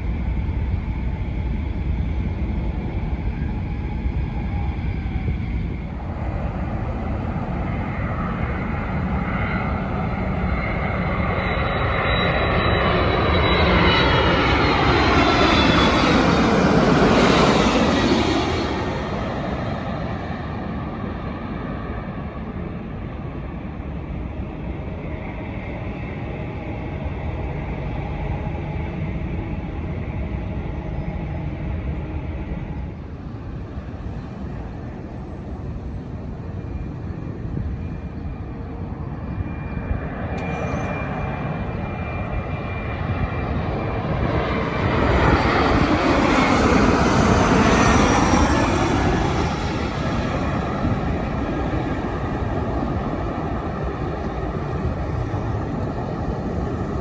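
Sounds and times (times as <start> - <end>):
faint engine whine: 0.0 - 57.0
jet engines rumbling: 0.0 - 57.0.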